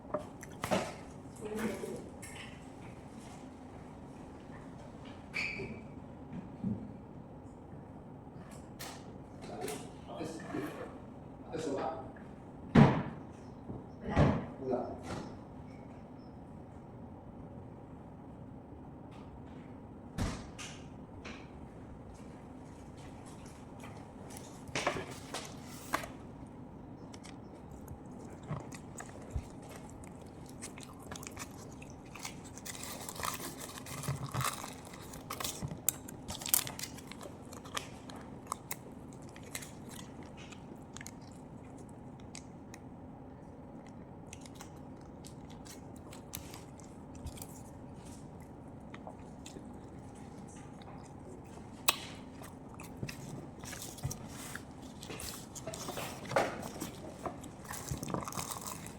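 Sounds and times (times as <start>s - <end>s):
person chewing crunchy food: 0.0s - 1.3s, 22.7s - 58.9s
steady low hum: 0.0s - 58.9s.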